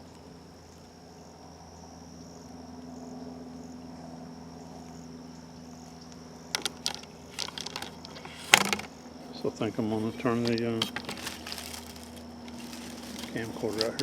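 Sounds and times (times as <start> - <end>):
insects chirping: 0.0 - 14.0
low steady hum: 0.0 - 14.0.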